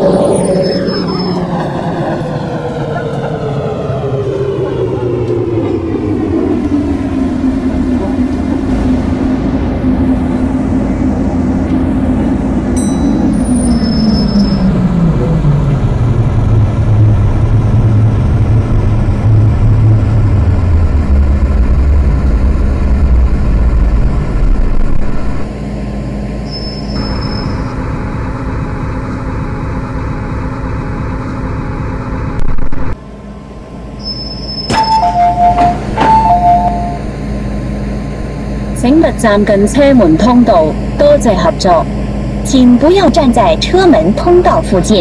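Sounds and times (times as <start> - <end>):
train hiss and hum: 0.0 - 45.0
train motor whine: 0.0 - 45.0
two-tone door chime beeping: 12.8 - 14.7, 34.0 - 37.1.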